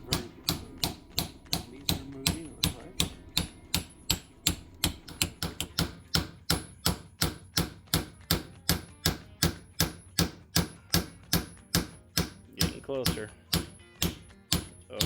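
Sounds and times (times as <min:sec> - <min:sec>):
hammer tapping on metal: 0:00.0 - 0:15.0.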